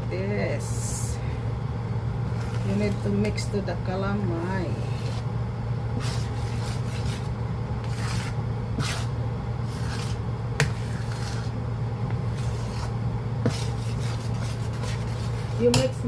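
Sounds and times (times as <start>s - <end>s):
steady low hum: 0.0s - 16.0s
spoon scraping a pot: 12.3s - 16.0s.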